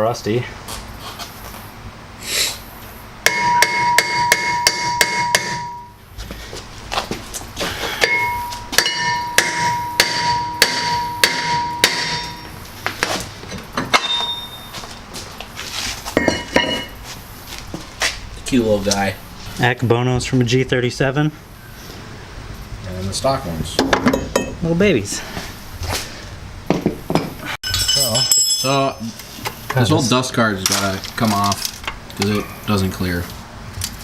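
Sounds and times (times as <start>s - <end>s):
hammer striking metal: 3.2s - 6.0s, 8.0s - 12.6s, 13.8s - 14.6s, 16.2s - 16.9s.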